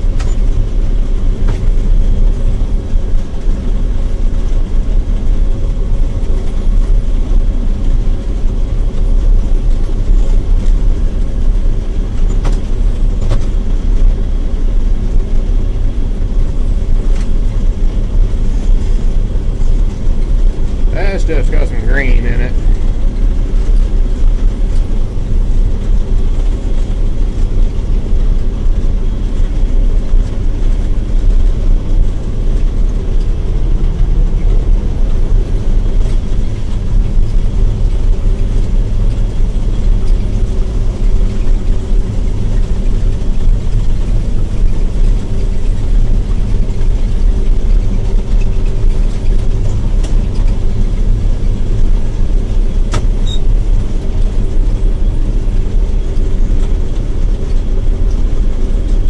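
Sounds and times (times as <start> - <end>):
combine harvester engine droning: 0.0 - 59.0.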